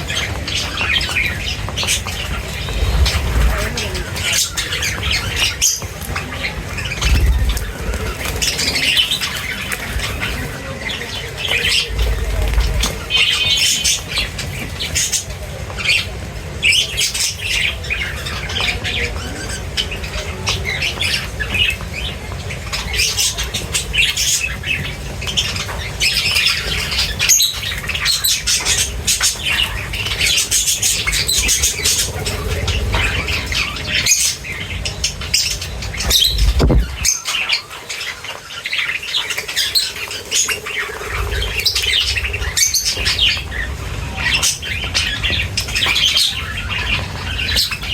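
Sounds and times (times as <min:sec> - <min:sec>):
birds chirping and squawking: 0:00.0 - 0:47.9
low rumble: 0:07.0 - 0:08.3, 0:11.7 - 0:13.4, 0:35.7 - 0:37.1.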